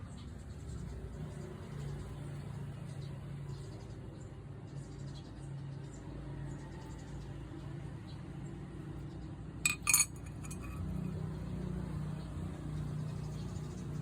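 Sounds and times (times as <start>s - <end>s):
sharp metallic clinks: 9.7s - 11.2s.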